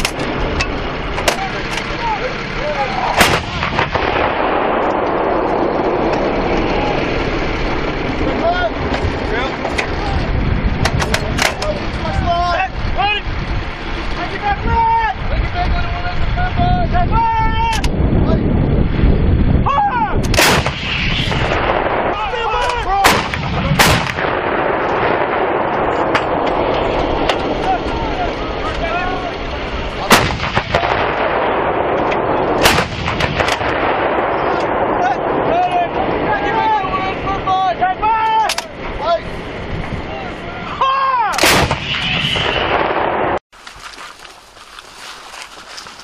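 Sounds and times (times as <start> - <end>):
steady rumble: 0.0 - 46.0
loud gunshot: 3.2 - 4.9, 20.3 - 22.4, 23.0 - 26.7, 30.0 - 34.9, 41.3 - 43.4
weaker cracks: 30.0 - 34.8.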